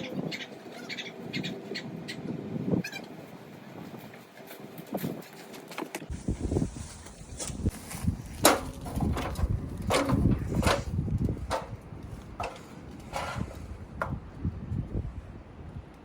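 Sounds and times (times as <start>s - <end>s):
irregular knocks and clatters: 8.4s - 14.2s.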